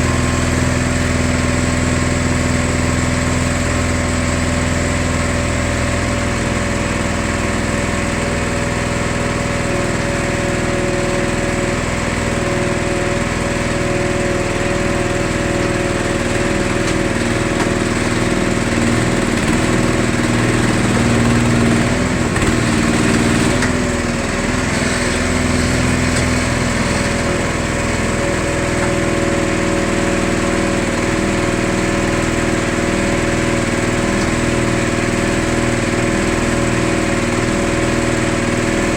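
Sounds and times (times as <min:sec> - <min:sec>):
small engine droning: 0:00.0 - 0:38.9.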